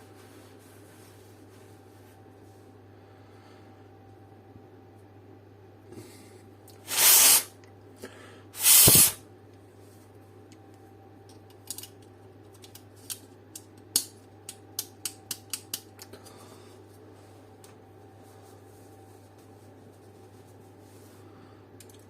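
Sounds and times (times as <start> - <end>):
hissing spray bursts: 6.9 - 7.5, 8.6 - 9.2.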